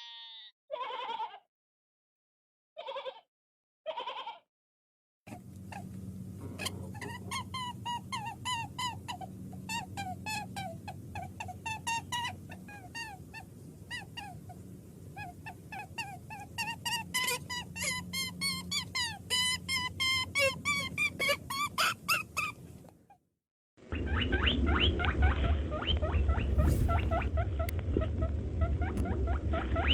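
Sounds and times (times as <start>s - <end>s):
low steady hum: 5.3s - 22.9s, 23.9s - 29.9s
puppies whimpering and yelping: 15.2s - 22.6s.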